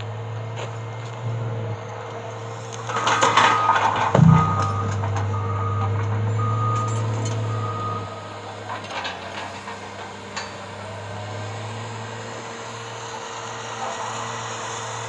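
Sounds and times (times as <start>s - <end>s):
engine drone: 0.0s - 15.0s
reversing alarm beeping: 2.8s - 8.4s
knocks: 4.1s - 5.2s.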